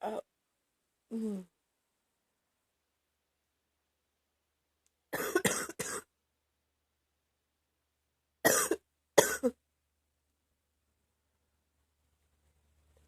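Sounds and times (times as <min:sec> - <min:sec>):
woman coughing wetly: 0:05.2 - 0:06.1, 0:08.4 - 0:09.6.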